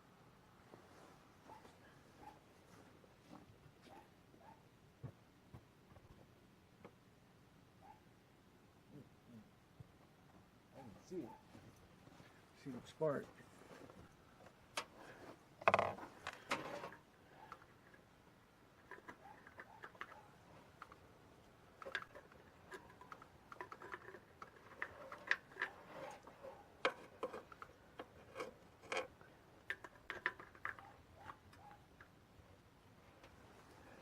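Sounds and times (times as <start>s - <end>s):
tools clicking and knocking: 15.6s - 16.7s, 26.8s - 32.2s.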